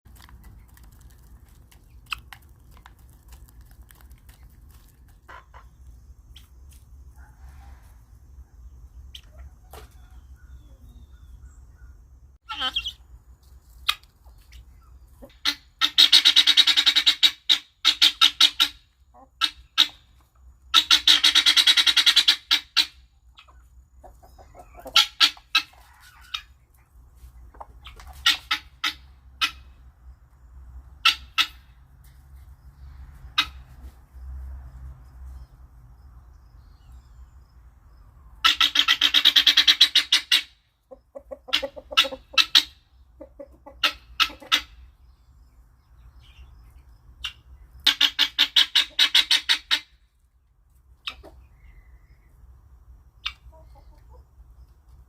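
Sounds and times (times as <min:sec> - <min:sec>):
guinea fowl chattering calls: 0:05.3 - 0:05.8, 0:09.1 - 0:13.0, 0:13.8 - 0:29.8, 0:30.9 - 0:31.8, 0:33.3 - 0:33.7, 0:38.4 - 0:45.0, 0:47.2 - 0:50.0, 0:51.0 - 0:52.0, 0:53.2 - 0:54.2.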